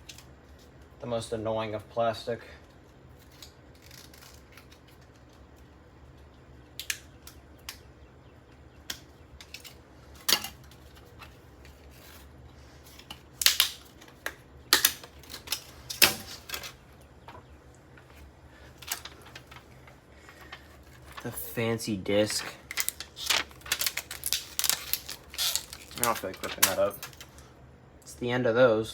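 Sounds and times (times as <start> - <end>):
plastic cracking and snapping: 3.2 - 5.7, 6.7 - 7.9, 8.8 - 12.2, 13.0 - 17.4, 18.8 - 21.3, 22.3 - 27.4.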